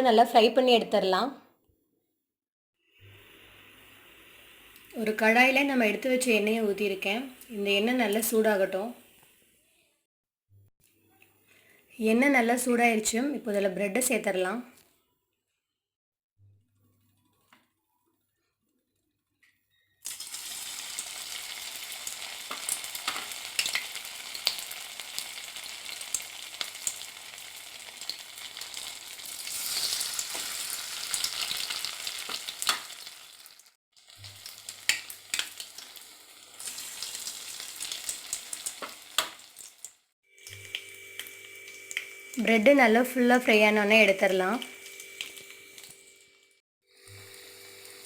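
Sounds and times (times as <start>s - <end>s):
food deep-frying in hot oil: 20.0s - 42.8s, 44.4s - 48.0s.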